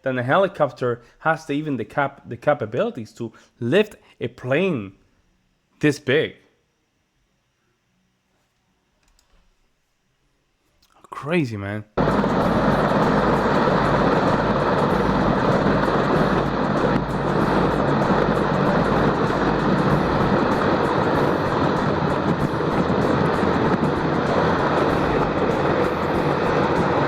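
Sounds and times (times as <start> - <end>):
low steady hum: 0.0 - 27.0
helicopter turbines and rotor: 12.0 - 27.0.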